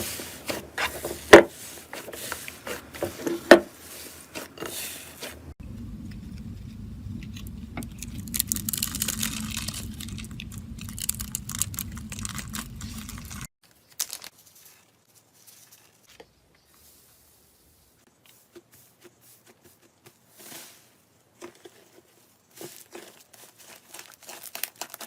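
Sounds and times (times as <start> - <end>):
low hum: 5.6 - 13.5
slime crackling and popping: 7.2 - 13.5.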